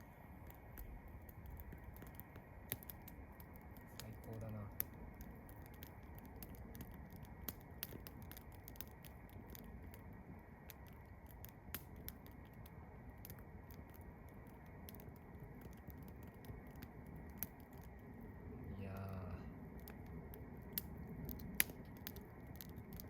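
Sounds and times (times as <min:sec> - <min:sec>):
campfire crackling: 0:00.0 - 0:23.0.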